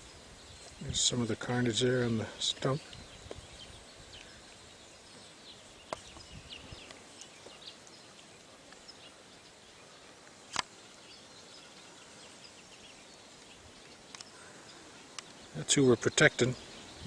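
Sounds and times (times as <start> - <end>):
small birds chirping: 0.0 - 17.0
sharp click: 10.5 - 10.7.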